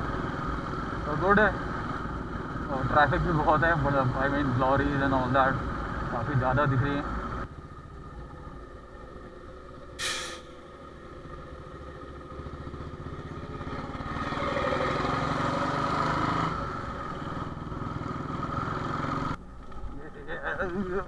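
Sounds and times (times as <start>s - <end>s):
motorcycle engine running: 0.0s - 19.5s
short sharp clatter: 10.0s - 10.6s.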